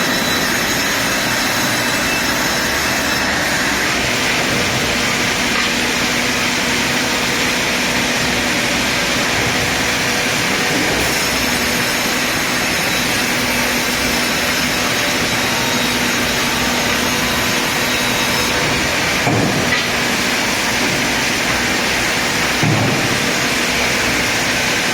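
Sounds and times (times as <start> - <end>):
band saw cutting log: 0.0 - 24.9.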